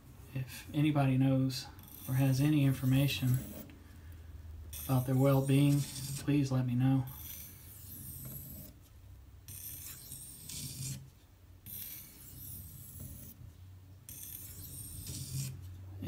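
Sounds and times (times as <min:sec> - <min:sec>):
knife strokes on sharpening stone: 0:11.7 - 0:13.4, 0:14.1 - 0:15.6.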